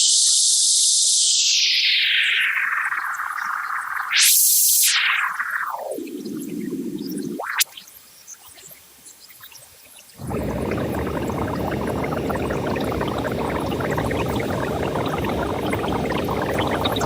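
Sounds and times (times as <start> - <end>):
faint crackles: 10.2 - 17.0
grainy rush of white noise: 10.2 - 17.0.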